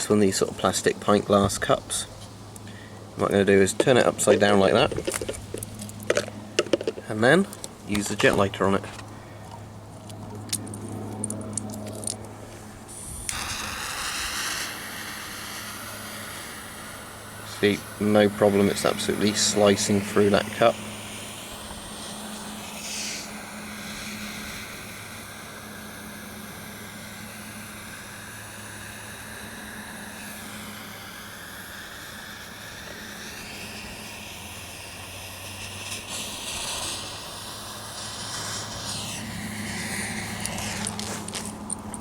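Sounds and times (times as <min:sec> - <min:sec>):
jet lighter flame hissing: 0:12.9 - 0:41.7.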